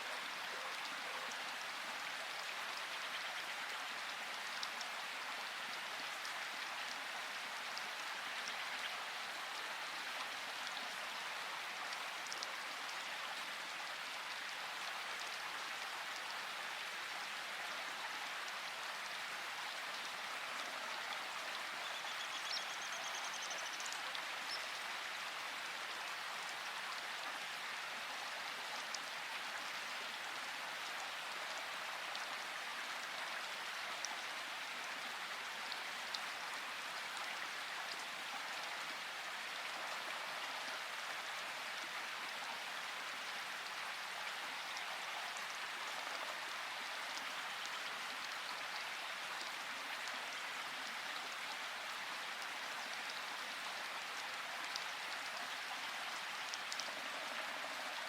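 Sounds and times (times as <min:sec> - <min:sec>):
steady rain patter: 0:00.0 - 0:58.0.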